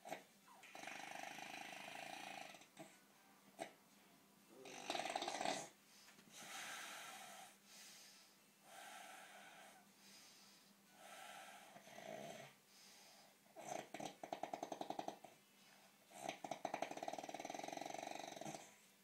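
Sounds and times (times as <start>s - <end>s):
person snoring: 0.0s - 2.9s, 4.6s - 5.7s, 16.1s - 18.7s.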